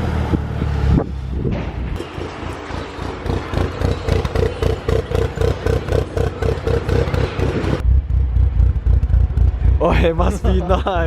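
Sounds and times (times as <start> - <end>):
car engine lumpy idle: 3.2 - 11.0.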